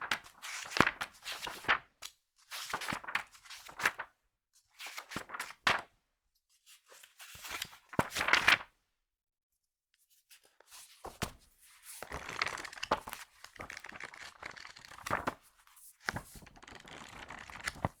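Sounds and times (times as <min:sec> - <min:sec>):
magazine pages flipping: 0:02.6 - 0:04.0, 0:04.9 - 0:05.8, 0:07.4 - 0:08.6, 0:11.2 - 0:18.0.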